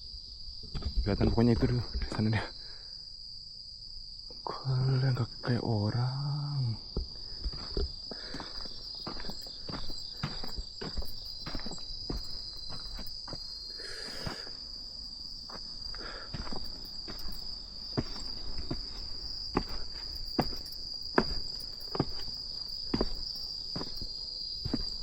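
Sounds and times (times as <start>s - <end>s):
crickets chirring: 0.0s - 25.0s
footsteps walking slowly: 6.8s - 25.0s.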